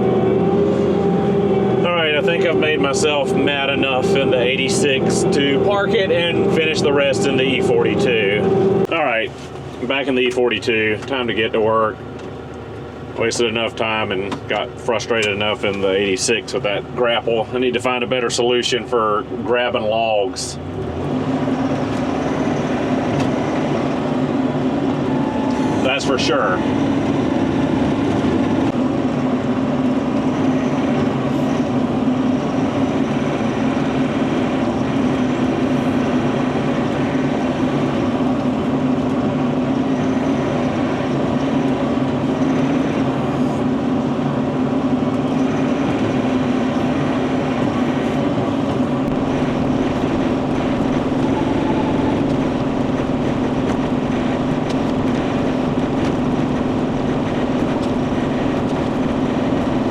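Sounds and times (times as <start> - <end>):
mini excavator diesel engine: 0.0 - 59.9.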